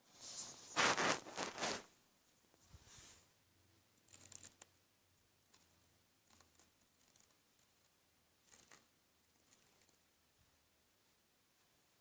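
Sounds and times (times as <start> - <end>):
scratching on paper: 0.2 - 1.9, 4.0 - 4.7, 5.5 - 10.0.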